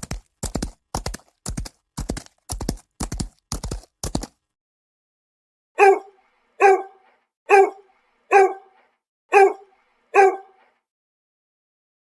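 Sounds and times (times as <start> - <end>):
dog barking: 5.8 - 10.8.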